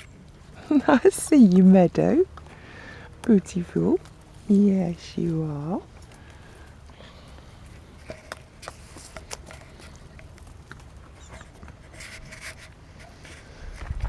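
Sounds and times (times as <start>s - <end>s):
low steady rumble: 13.5s - 14.0s.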